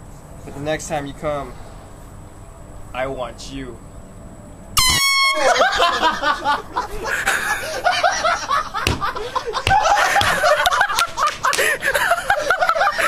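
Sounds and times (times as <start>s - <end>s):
people laughing: 5.4s - 13.0s
sharp smacks: 8.8s - 10.4s.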